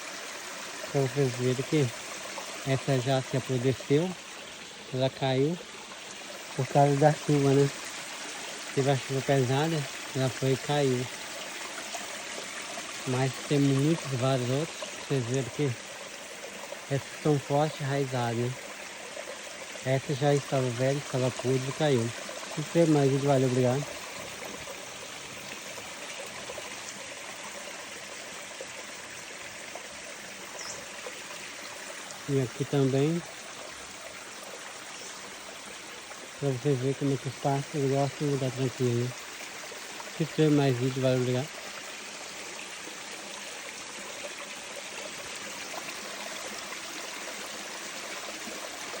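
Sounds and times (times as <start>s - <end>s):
stream water running: 0.0s - 49.0s.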